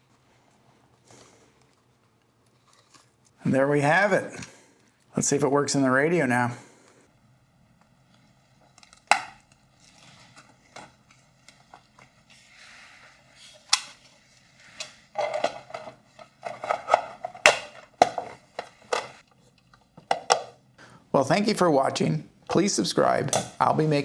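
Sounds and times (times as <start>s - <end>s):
plastic parts clicking and knocking: 14.8s - 20.6s, 23.3s - 23.6s.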